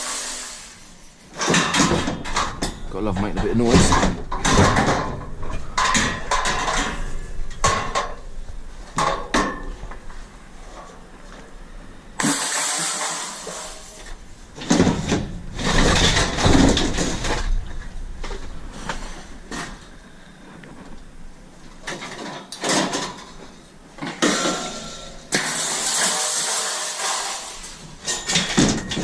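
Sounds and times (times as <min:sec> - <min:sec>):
scrap metal clattering: 0:00.0 - 0:08.2, 0:12.2 - 0:17.7, 0:21.8 - 0:29.0
metal scraping: 0:24.1 - 0:29.0.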